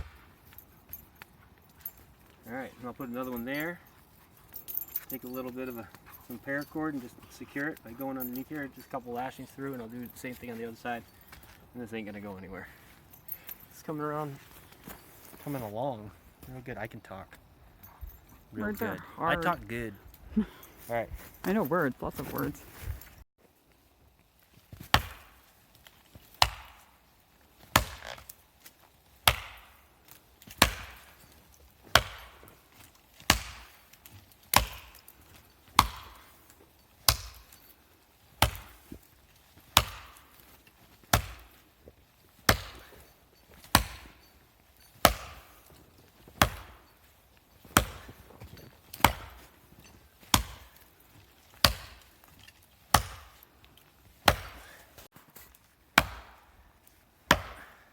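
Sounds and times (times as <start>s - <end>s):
axe chopping wood: 0.0s - 0.5s, 24.8s - 25.5s, 26.1s - 27.0s, 27.6s - 28.4s, 29.2s - 31.2s, 31.8s - 32.6s, 33.2s - 37.7s, 38.3s - 39.0s, 39.6s - 41.6s, 42.4s - 44.3s, 44.9s - 49.6s, 50.2s - 53.4s, 54.2s - 55.1s, 55.9s - 56.6s, 57.2s - 57.9s.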